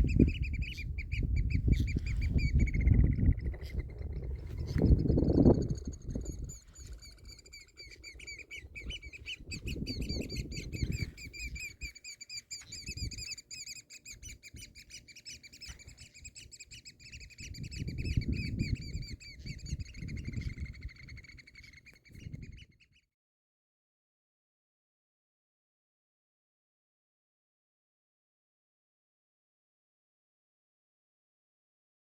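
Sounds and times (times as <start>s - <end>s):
small songbird twittering: 0.0s - 23.1s.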